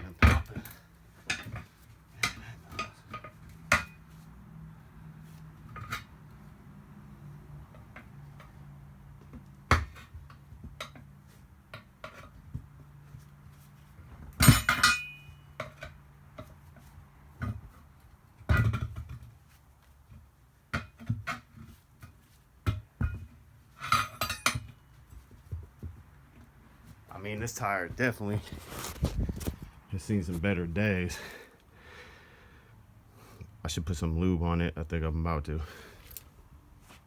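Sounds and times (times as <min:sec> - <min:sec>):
tire irons clanking on wheel rim: 0:14.1 - 0:19.4, 0:20.7 - 0:28.4.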